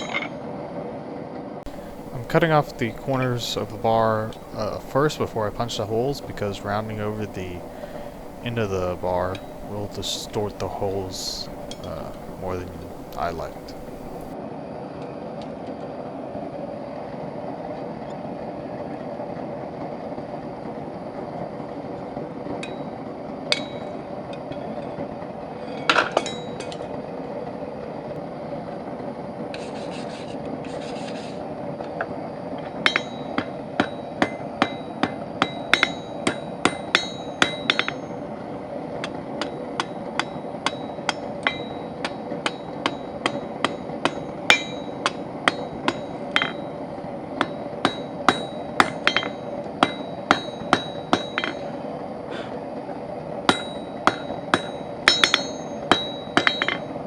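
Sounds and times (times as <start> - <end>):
hammer striking steel on anvil: 1.7 - 10.7, 53.5 - 56.8
steady background hum: 1.7 - 14.4.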